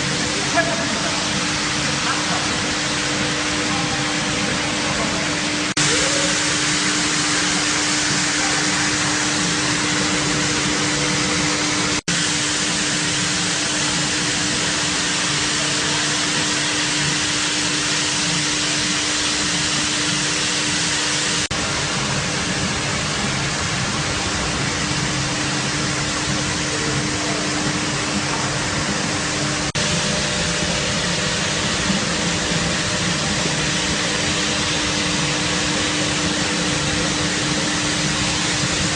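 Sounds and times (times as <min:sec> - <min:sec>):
carpet washing machine running: 0:00.0 - 0:38.9.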